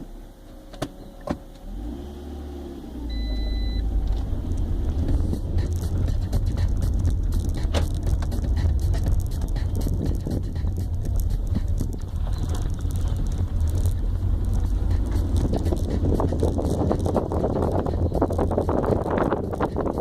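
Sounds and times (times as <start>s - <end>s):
car engine rumble: 0.0s - 20.0s
short high beep: 3.1s - 3.9s.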